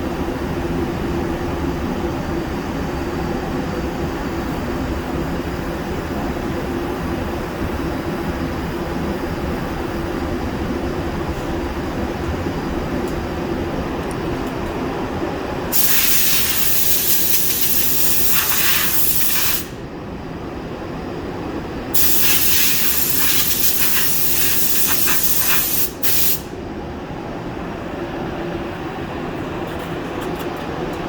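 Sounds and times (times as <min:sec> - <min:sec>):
low hum of shop machinery: 0:00.0 - 0:31.0
spray gun hissing: 0:15.7 - 0:19.8, 0:21.9 - 0:26.5.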